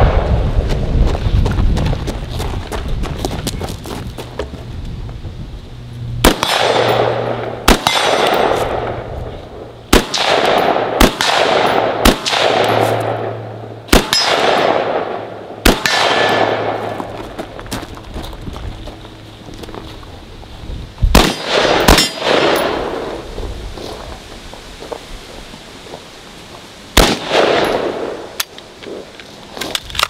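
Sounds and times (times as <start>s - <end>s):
rifle shots: 6.2s - 9.1s, 9.9s - 17.1s, 21.1s - 23.2s, 27.0s - 28.4s
steel target clanging: 14.0s - 16.9s, 21.2s - 23.0s.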